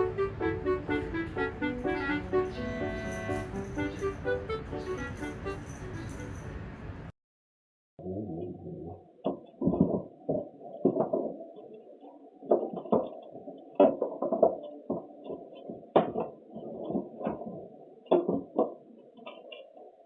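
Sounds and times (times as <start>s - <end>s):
muffled thumps and knocks: 9.3s - 11.4s.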